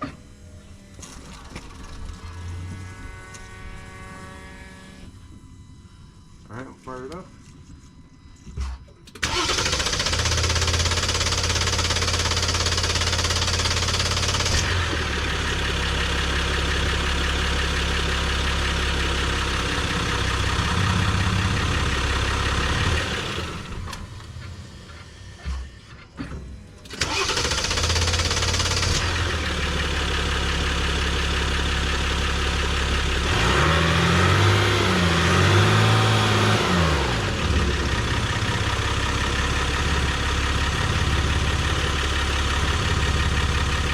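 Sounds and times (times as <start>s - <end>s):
diesel engine running: 9.1s - 43.9s.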